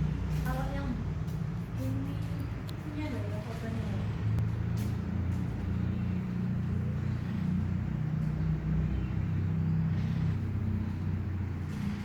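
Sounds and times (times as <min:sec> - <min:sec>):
engine idling: 0:03.8 - 0:12.0.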